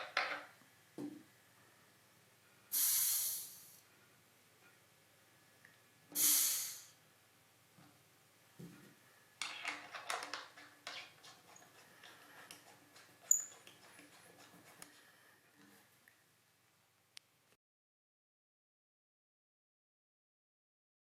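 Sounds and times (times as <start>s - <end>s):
short hiss of air: 2.7s - 3.8s, 6.1s - 7.0s.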